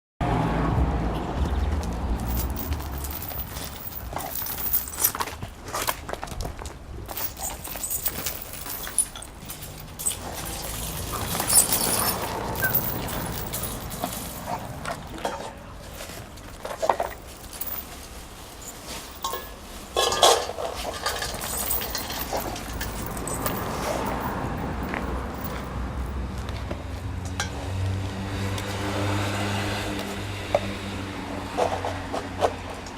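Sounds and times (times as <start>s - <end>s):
metallic clinks and rattles: 2.1s - 5.5s, 7.0s - 26.2s.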